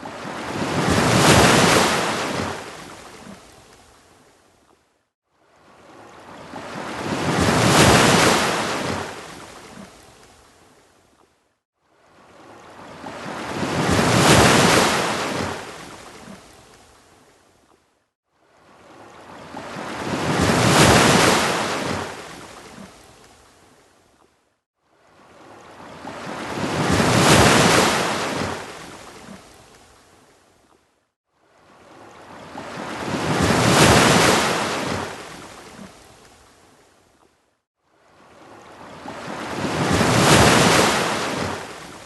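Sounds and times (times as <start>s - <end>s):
ocean waves breaking: 0.0s - 4.0s, 5.5s - 10.6s, 12.1s - 17.2s, 18.5s - 23.5s, 25.0s - 30.2s, 31.5s - 36.8s, 38.0s - 42.0s.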